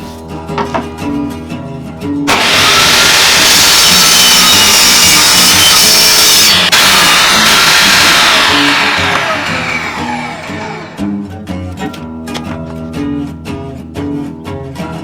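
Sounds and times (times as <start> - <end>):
woodworking power tool running: 2.3 - 11.2.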